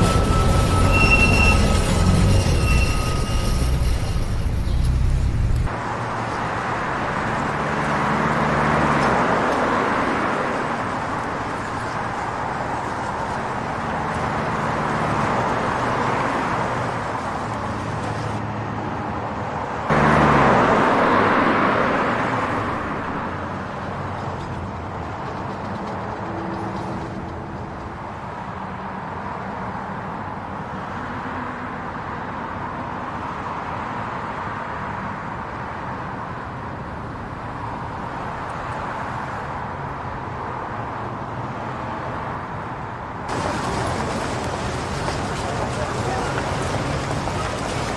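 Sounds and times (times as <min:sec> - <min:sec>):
train wheel squeal: 0:00.0 - 0:05.2
road noise: 0:00.0 - 0:47.9
vehicles passing: 0:00.0 - 0:47.9.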